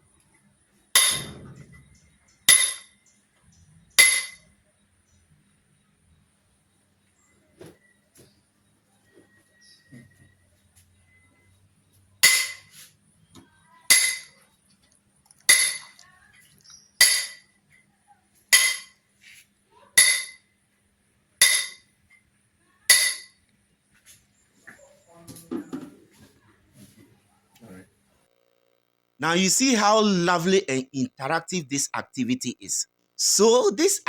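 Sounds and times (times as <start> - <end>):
metal vessel struck clinking: 1.0 - 1.4, 15.5 - 15.9.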